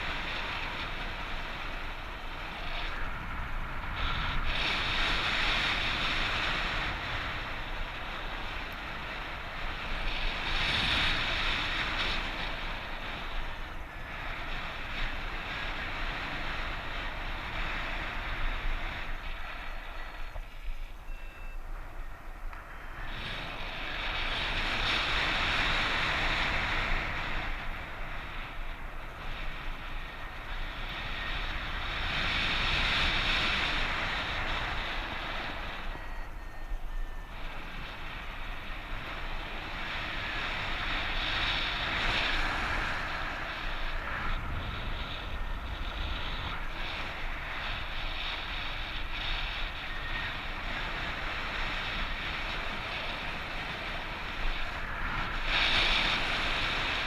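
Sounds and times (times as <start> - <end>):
strong wind over microphone: 0.0 - 57.0.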